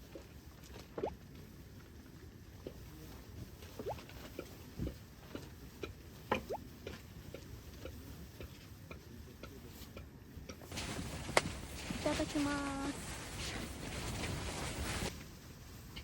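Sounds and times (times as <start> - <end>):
food bubbling in a pot: 0.0 - 9.0.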